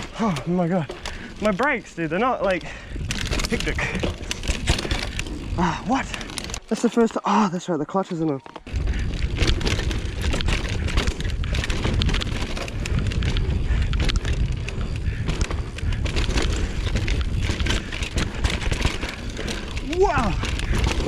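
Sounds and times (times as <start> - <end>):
wind buffeting microphone: 0.0 - 6.5, 8.7 - 21.0
bike clicks and rattles: 0.0 - 21.0
steady rumble: 8.7 - 21.0.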